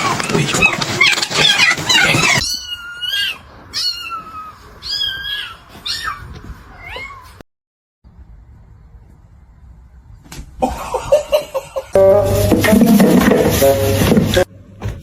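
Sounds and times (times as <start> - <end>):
cat meowing: 1.0 - 7.4.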